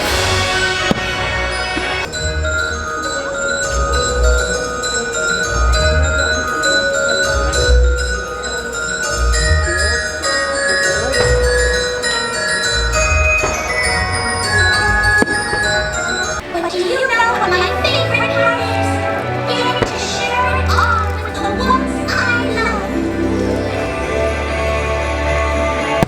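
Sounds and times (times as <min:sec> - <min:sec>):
heavy low thumps: 0:00.0 - 0:16.4
festive music with bells: 0:00.0 - 0:26.0.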